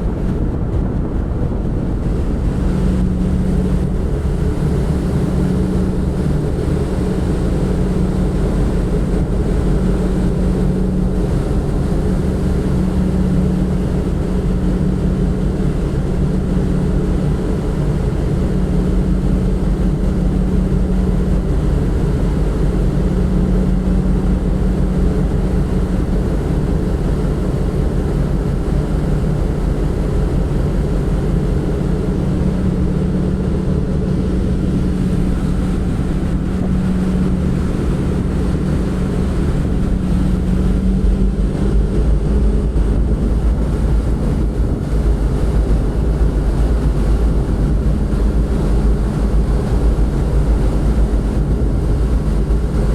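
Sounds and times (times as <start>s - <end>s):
ship engine droning: 0.0s - 52.9s
wind on microphone: 0.0s - 52.9s.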